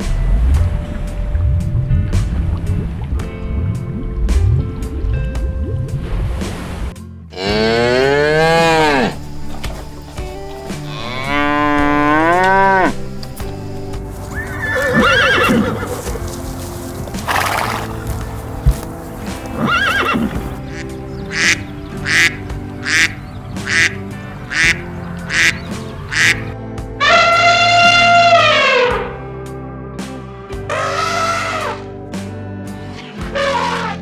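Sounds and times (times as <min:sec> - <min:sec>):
background music: 0:00.0 - 0:34.0
farm animals calling: 0:07.4 - 0:28.9, 0:30.7 - 0:31.9, 0:33.0 - 0:34.0.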